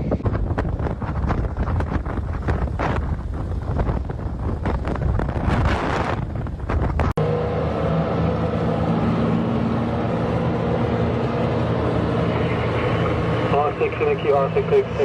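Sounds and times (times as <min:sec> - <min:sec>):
wind buffeting microphone: 0:00.0 - 0:07.2
vehicle engine hum: 0:00.0 - 0:15.0.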